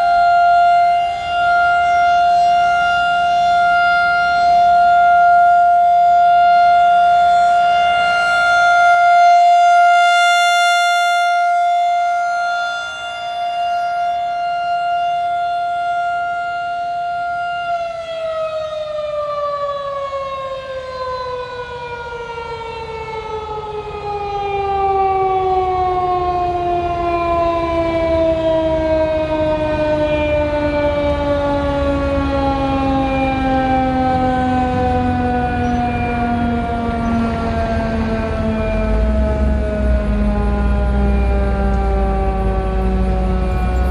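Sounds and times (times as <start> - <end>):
warning siren steady tone: 0.0 - 43.9.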